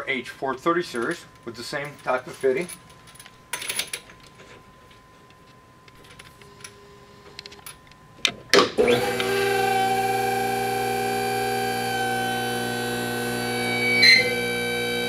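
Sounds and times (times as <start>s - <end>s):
loud steady multi-pitch tone: 4.4s - 8.2s, 8.8s - 15.0s.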